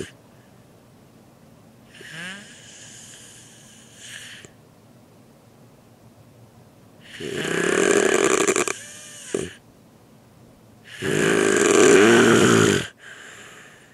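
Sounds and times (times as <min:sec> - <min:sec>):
person snoring: 0:01.9 - 0:04.5, 0:07.0 - 0:09.6, 0:10.9 - 0:13.9
snore whistle: 0:07.1 - 0:09.6, 0:10.9 - 0:13.0.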